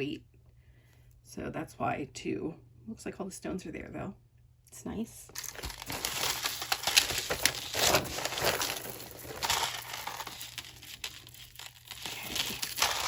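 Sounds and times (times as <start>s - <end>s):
packaging crinkling and rustling: 5.3s - 13.0s.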